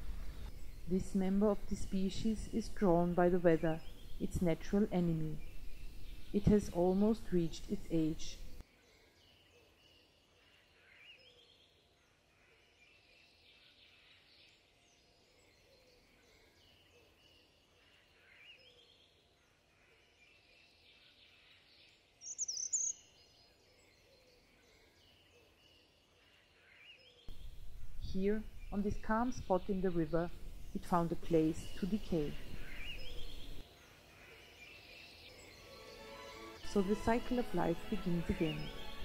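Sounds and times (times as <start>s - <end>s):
faint bird chirps and trills: 0.0s - 39.0s
loud high-pitched bird call: 22.2s - 23.1s.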